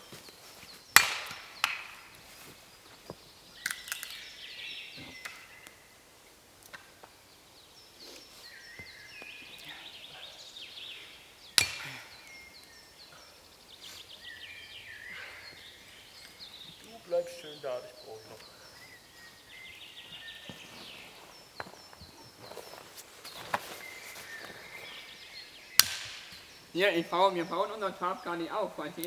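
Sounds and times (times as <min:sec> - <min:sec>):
birds chirping: 0:00.0 - 0:29.0
wood cracking: 0:01.0 - 0:04.3, 0:25.8 - 0:29.0.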